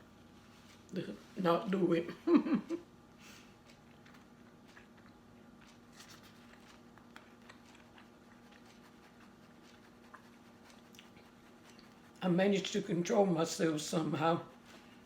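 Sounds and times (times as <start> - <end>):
low steady hum: 0.0 - 15.0
eating clicks and rustles: 3.2 - 12.8.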